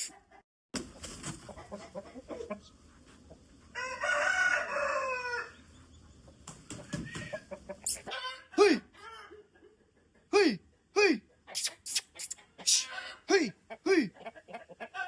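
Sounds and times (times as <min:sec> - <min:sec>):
chickens clucking softly: 0:00.0 - 0:15.0
rooster crowing: 0:03.7 - 0:05.7, 0:08.1 - 0:09.4.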